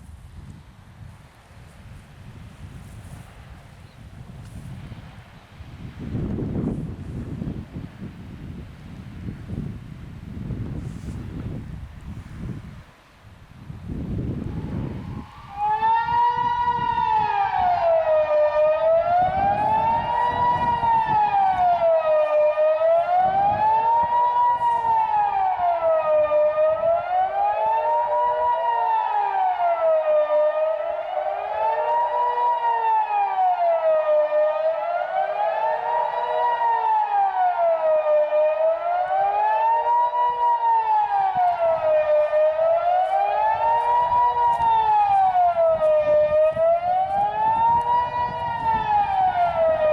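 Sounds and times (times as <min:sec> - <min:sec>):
civil defence siren wailing: 0:02.5 - 0:03.3, 0:10.5 - 0:11.5, 0:13.9 - 0:49.9.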